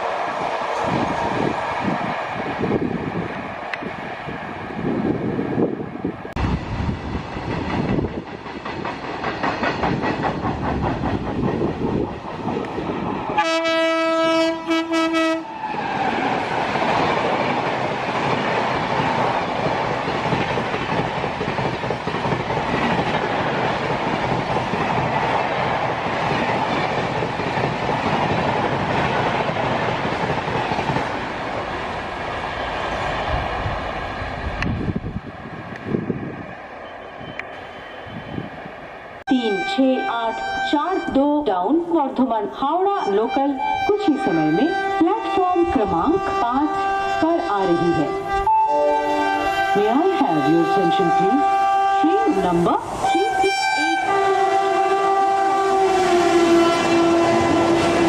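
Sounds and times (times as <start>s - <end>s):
train wheels clattering: 7.2s - 13.4s, 16.5s - 31.4s
train horn: 13.4s - 15.9s, 39.3s - 41.4s, 43.0s - 58.0s.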